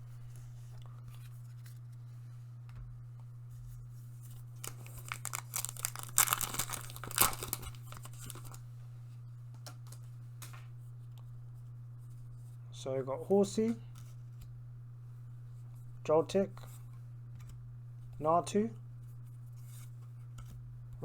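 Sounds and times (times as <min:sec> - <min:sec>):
steady low hum: 0:00.0 - 0:21.0
foil wrapper tearing and crinkling: 0:04.6 - 0:08.6.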